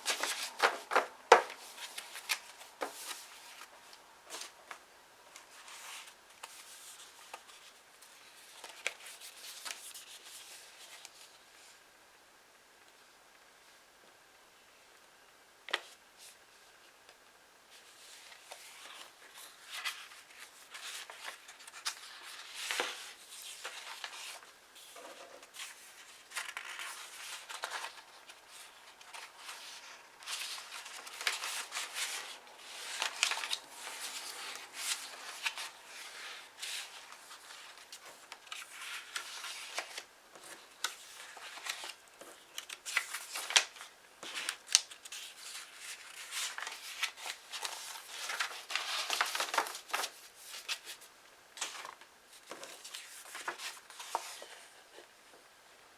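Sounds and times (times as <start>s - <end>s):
paper rustling and sliding: 0.0s - 3.7s, 5.4s - 11.3s, 17.8s - 55.1s
paper crackles and snips: 18.1s - 54.6s.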